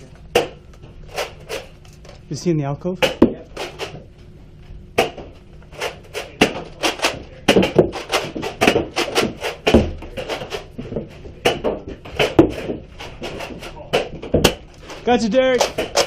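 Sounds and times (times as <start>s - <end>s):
sharp clacks and knocks: 15.5s - 16.0s.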